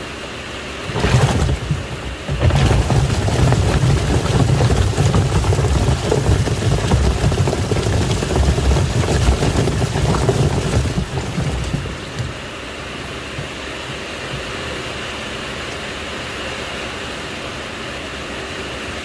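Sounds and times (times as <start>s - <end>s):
washing machine motor rumble: 0.6s - 15.7s
water sloshing in drum: 0.8s - 14.7s.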